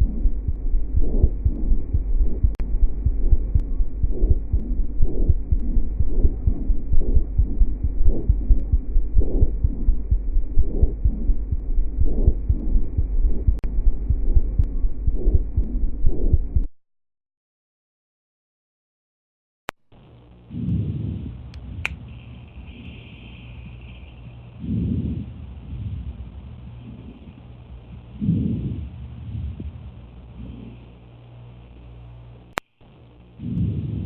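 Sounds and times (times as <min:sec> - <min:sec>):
heartbeat thuds: 0:00.0 - 0:16.7
low muffled chest rumble: 0:00.0 - 0:16.7, 0:20.5 - 0:30.9, 0:33.4 - 0:34.0.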